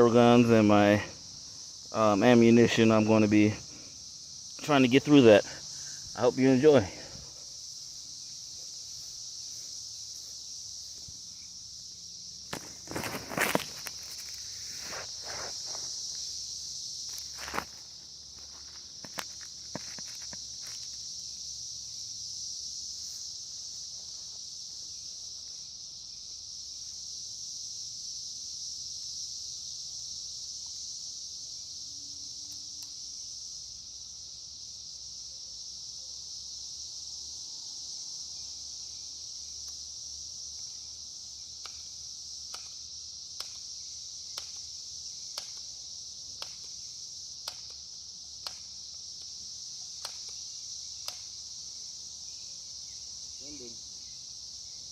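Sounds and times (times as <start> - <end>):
crickets chirping: 0.0 - 54.9
faint sharp clicks: 51.0 - 51.3.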